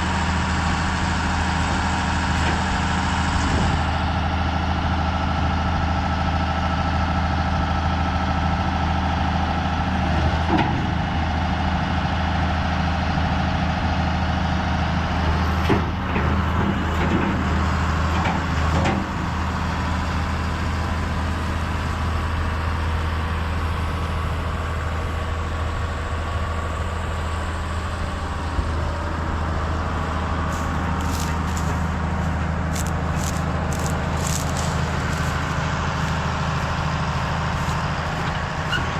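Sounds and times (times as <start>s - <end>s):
heavy machinery engine running: 0.0s - 38.9s.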